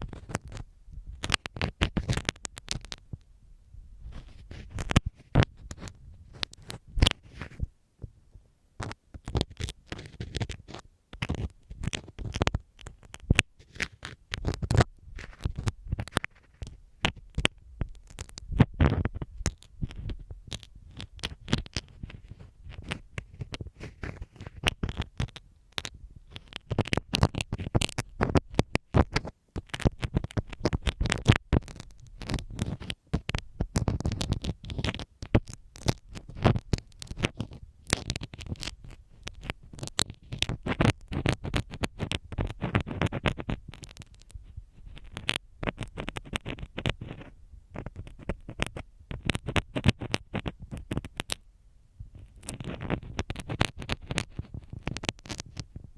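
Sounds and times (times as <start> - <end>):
pin scratching on microphone: 0.0 - 3.1, 4.0 - 7.7, 8.8 - 51.4, 52.1 - 55.9.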